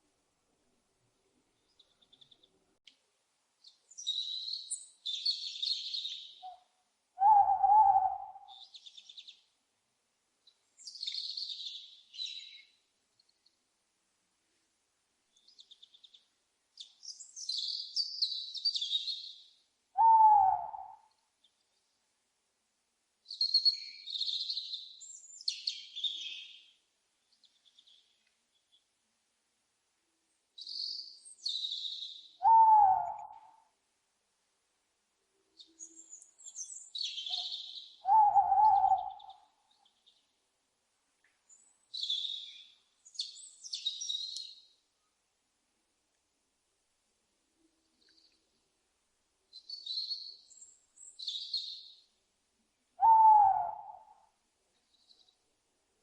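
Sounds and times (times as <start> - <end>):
birds twittering chirps: 3.6 - 6.6, 7.2 - 9.5, 10.4 - 12.8, 15.3 - 20.8, 23.3 - 28.9, 30.6 - 33.4, 35.6 - 40.3, 41.5 - 44.7, 49.5 - 52.2
owl calls: 7.2 - 8.7, 20.0 - 21.1, 31.7 - 33.6, 37.0 - 39.6, 53.0 - 54.3.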